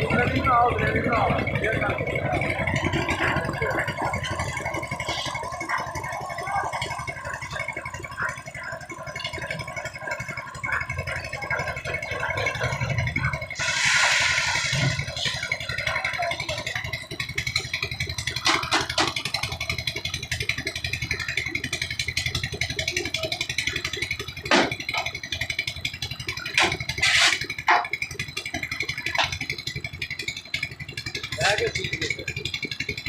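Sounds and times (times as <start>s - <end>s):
concrete mixer engine chugging: 0.0s - 33.0s
sharp clanks: 17.8s - 19.7s, 24.4s - 25.4s, 26.3s - 29.5s.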